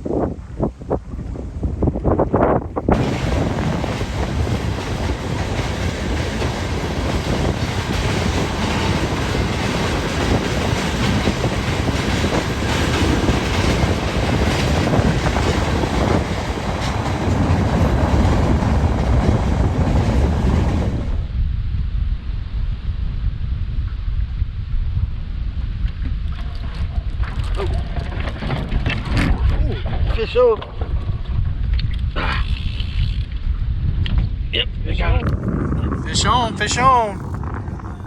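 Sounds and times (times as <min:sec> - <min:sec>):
train wheels rumbling on rails: 0:01.2 - 0:21.4, 0:35.2 - 0:38.0.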